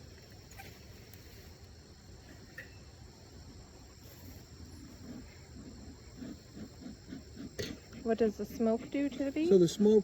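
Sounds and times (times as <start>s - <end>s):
insects chirring: 0.0s - 10.0s.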